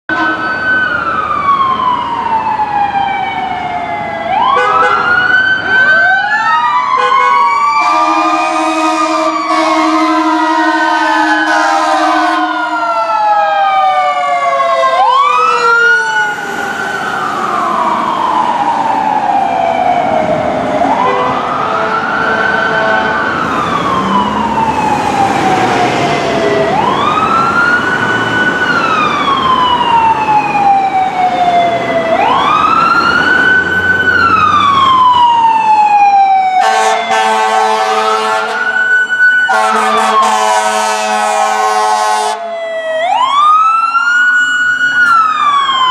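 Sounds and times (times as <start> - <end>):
fire truck air horn: 0.1 - 0.6, 4.4 - 5.8, 6.9 - 13.0, 20.8 - 27.2, 36.5 - 38.8, 39.4 - 42.5
fire engine siren wailing: 0.1 - 45.9.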